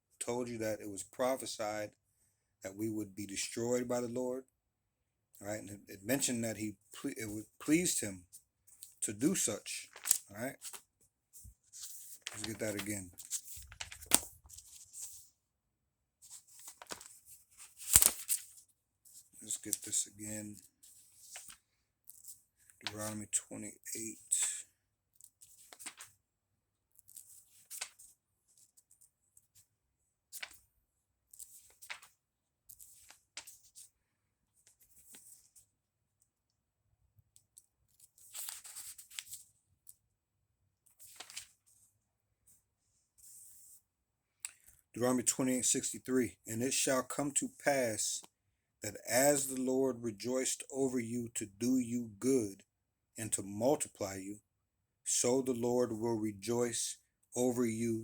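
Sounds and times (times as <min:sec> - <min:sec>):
book pages turning: 0:08.8 - 0:15.3, 0:16.2 - 0:23.4, 0:25.2 - 0:26.2, 0:27.0 - 0:29.7, 0:30.3 - 0:30.7, 0:31.3 - 0:34.0, 0:34.6 - 0:35.6, 0:37.4 - 0:40.0, 0:40.9 - 0:41.7.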